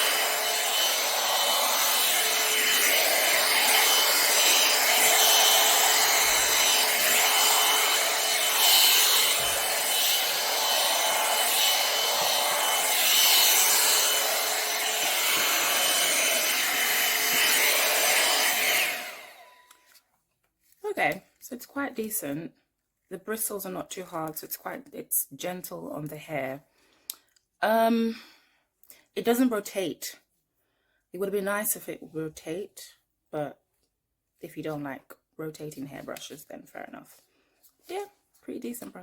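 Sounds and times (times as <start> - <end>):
hot-air dryer brush blowing: 0.0 - 19.7.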